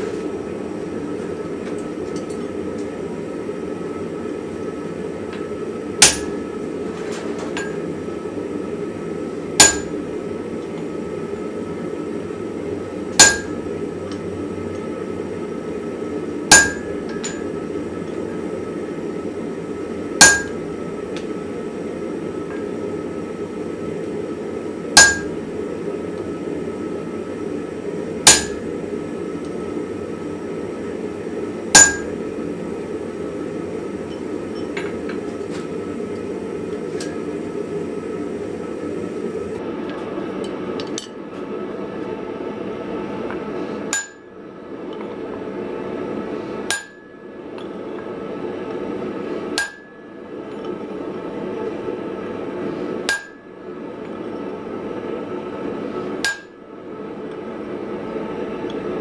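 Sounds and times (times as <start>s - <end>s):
hammer striking steel: 6.0s - 6.5s, 9.6s - 10.1s, 13.2s - 13.7s, 16.5s - 17.6s, 20.2s - 20.8s, 25.0s - 25.5s, 28.3s - 28.8s, 31.8s - 32.3s, 44.0s - 44.2s, 46.7s - 47.1s, 49.6s - 50.0s, 53.1s - 53.4s, 56.2s - 56.6s.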